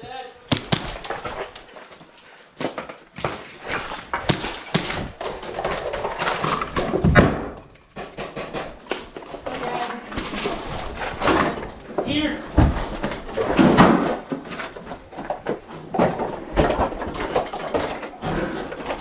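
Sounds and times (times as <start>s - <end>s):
taps and knocks on hard surfaces: 0.5s - 1.6s, 3.9s - 5.2s
heavy thud: 0.5s - 1.7s, 3.7s - 5.4s.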